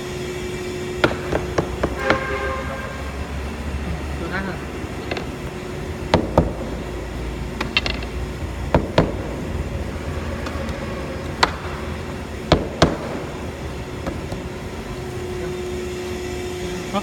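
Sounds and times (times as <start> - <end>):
sharp knocks: 1.0 - 2.4, 6.1 - 6.8, 7.6 - 9.5, 11.3 - 14.4
wood router humming: 9.4 - 17.0.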